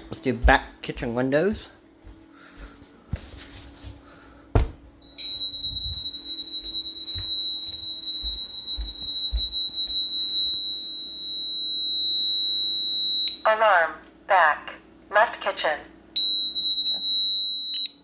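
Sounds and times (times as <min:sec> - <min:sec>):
alarm high-pitched tone: 0:05.0 - 0:13.5, 0:16.2 - 0:18.0.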